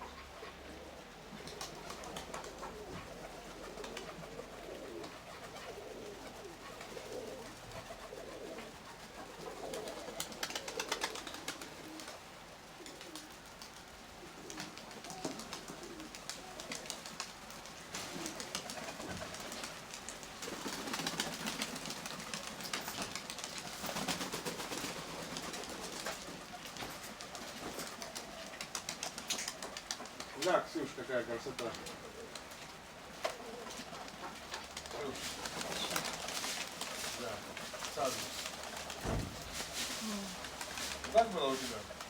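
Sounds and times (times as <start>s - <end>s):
pigeons cooing: 0.0s - 42.0s.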